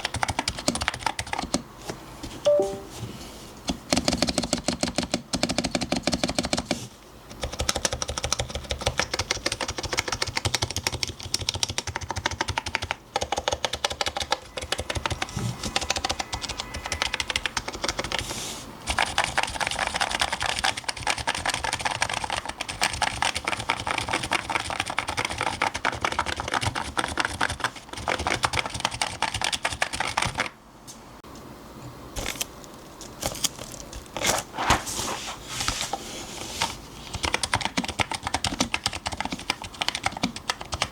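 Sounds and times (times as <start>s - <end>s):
fast keyboard typing: 0.0s - 1.6s, 3.9s - 6.8s, 7.4s - 18.3s, 18.9s - 30.6s, 37.1s - 40.9s.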